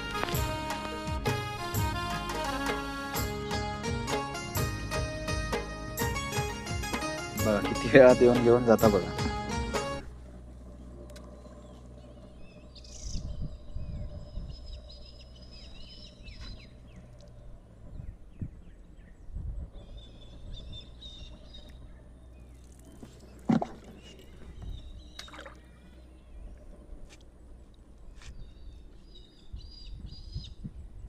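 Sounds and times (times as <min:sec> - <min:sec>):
low rumbles: 0:03.2 - 0:31.0
birds chirping and whistling: 0:10.8 - 0:17.1, 0:17.9 - 0:26.6, 0:28.2 - 0:30.7.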